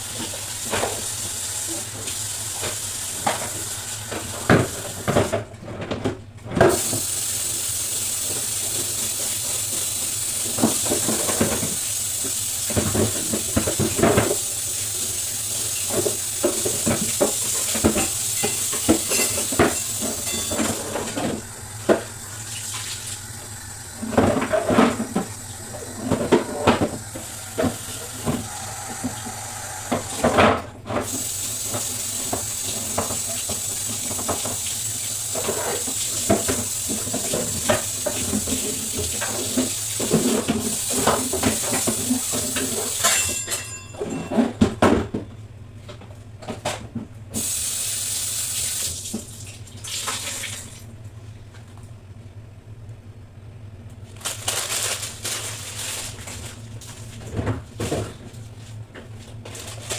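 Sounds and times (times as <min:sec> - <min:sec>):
tap water running into sink: 0:00.0 - 0:05.4, 0:06.7 - 0:43.4, 0:47.4 - 0:50.9
dishes knocking and clattering: 0:15.9 - 0:22.1, 0:35.4 - 0:45.3.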